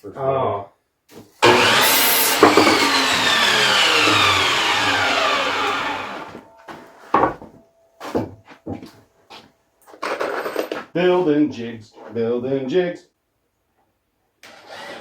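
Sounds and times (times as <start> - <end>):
power saw winding down: 1.4 - 6.9, 14.5 - 15.0
wooden knocks: 1.4 - 8.9.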